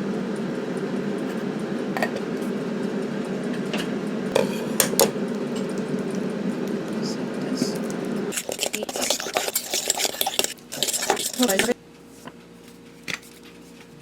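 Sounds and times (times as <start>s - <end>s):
steady low hum: 0.0s - 14.0s
utensil clinking against bowl: 8.3s - 11.8s.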